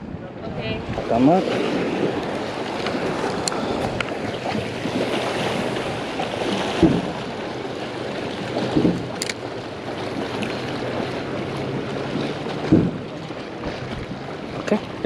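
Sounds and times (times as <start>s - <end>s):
wind buffeting microphone: 0.0s - 15.0s
water washing on shoreline: 0.2s - 15.0s
dull knocks: 6.8s - 7.2s, 8.7s - 9.1s, 12.6s - 13.8s
sharp click: 9.2s - 9.4s.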